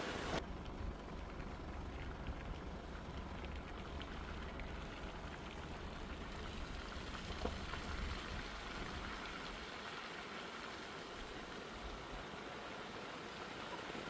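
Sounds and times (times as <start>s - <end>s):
light rain with drops ticking: 0.0s - 14.0s
low vehicle rumble: 0.2s - 9.6s.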